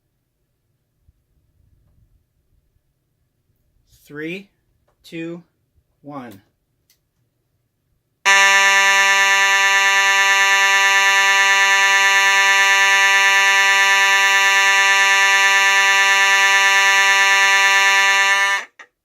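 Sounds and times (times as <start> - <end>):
alarm horn buzzing: 8.3 - 18.9.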